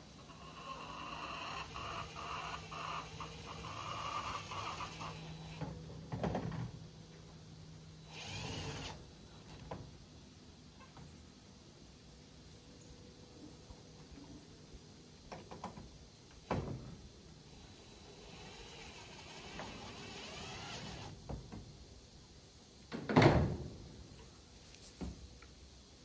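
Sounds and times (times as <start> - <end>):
cordless drill whining: 0.2 - 5.7, 8.1 - 9.0, 17.6 - 21.2.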